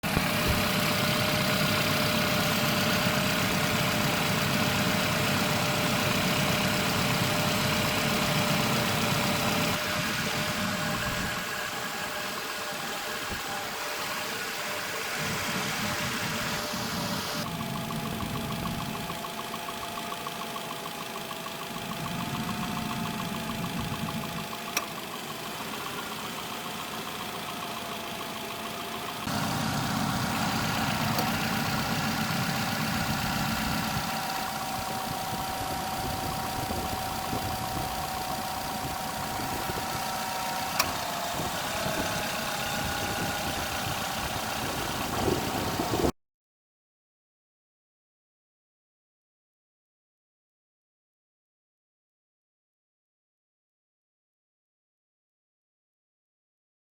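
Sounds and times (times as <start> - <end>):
car engine idling: 0.0 - 46.1
compressor whine: 29.3 - 46.1.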